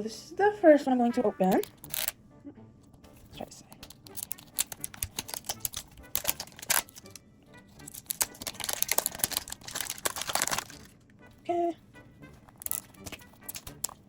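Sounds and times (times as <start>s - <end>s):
packaging crinkling and tearing: 1.6s - 2.2s, 3.8s - 11.1s, 12.3s - 14.0s.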